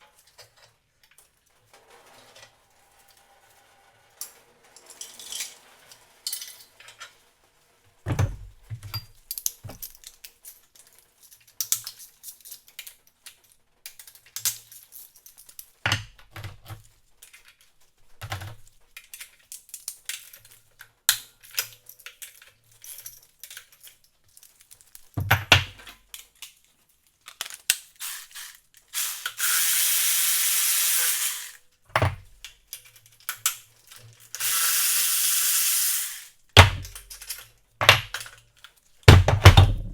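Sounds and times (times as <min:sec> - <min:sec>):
hissing air tool: 0:28.0 - 0:31.6, 0:34.4 - 0:36.4
heavy thuds: 0:39.1 - 0:39.9.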